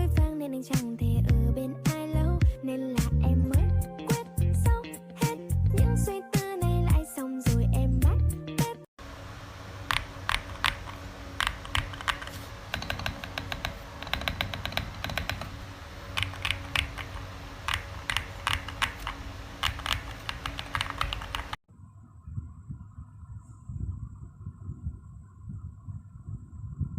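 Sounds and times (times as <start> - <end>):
mechanical keyboard key clicks: 16.2 - 21.5.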